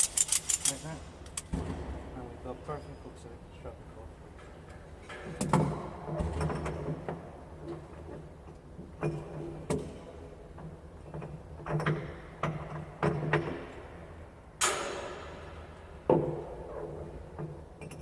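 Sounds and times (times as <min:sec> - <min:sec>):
metallic clicks and knocks: 0:00.0 - 0:01.7.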